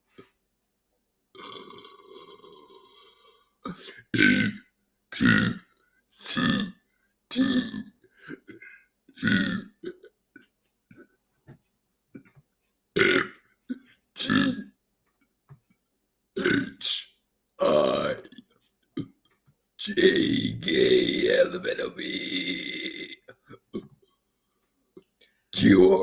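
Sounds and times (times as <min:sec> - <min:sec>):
person belching: 0:01.4 - 0:04.6, 0:07.3 - 0:10.1, 0:13.0 - 0:14.7, 0:17.6 - 0:19.2, 0:19.8 - 0:24.0, 0:25.6 - 0:26.0.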